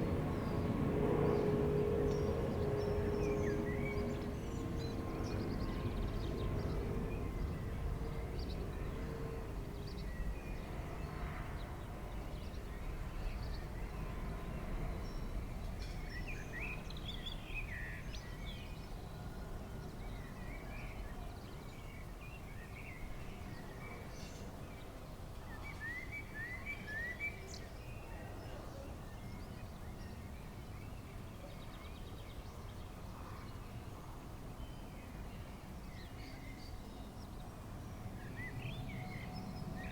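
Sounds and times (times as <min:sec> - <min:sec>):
jet airliner engine rumble: 0:00.0 - 0:10.0
songbirds chirping: 0:00.0 - 0:39.9.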